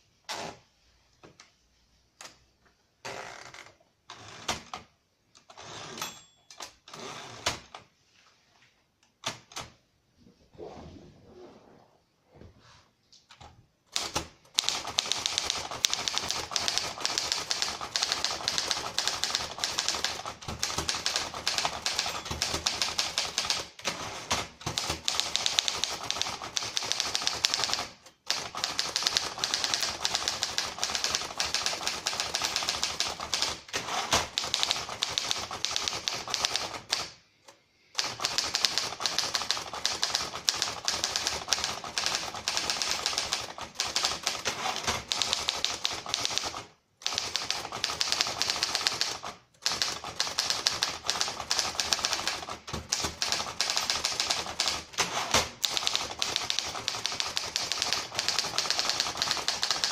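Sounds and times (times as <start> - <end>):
manual typewriter typing: 13.4 - 37.2, 37.9 - 59.9.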